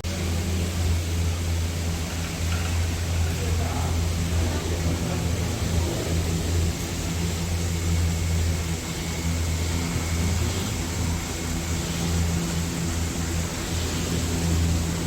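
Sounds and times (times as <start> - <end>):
low mechanical hum: 0.0 - 15.0
faint hiss: 0.1 - 15.0.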